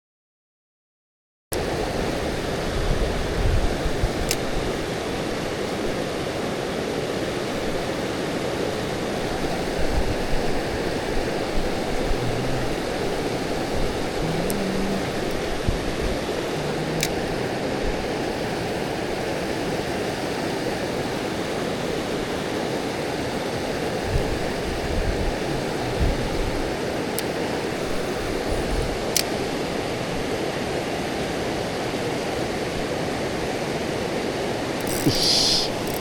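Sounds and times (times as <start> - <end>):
stream water rushing: 1.6 - 36.0
sharp ticks: 34.8 - 36.0.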